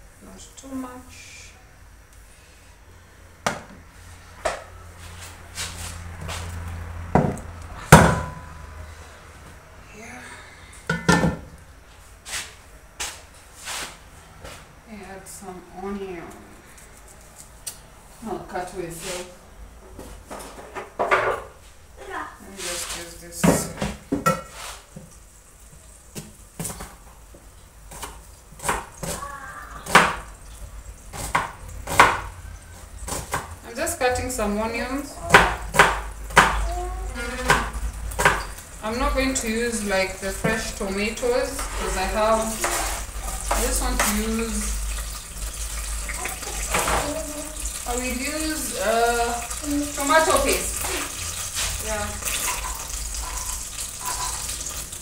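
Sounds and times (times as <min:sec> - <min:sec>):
pots and pans clattering: 0:10.9 - 0:11.5, 0:23.4 - 0:24.6, 0:46.1 - 0:47.2, 0:49.5 - 0:54.9
knife chopping on cutting board: 0:27.9 - 0:29.2, 0:31.1 - 0:32.3, 0:35.3 - 0:36.6.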